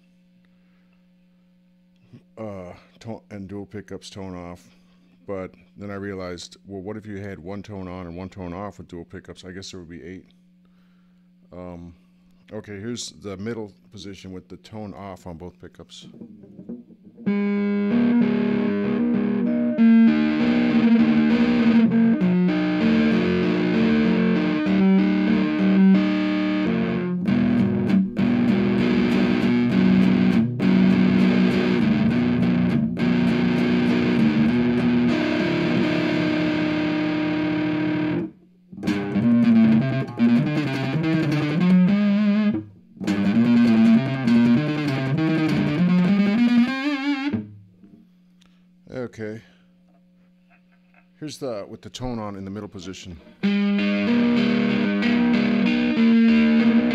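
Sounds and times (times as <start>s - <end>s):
distorted electric guitar: 16.0s - 48.0s, 53.2s - 56.9s.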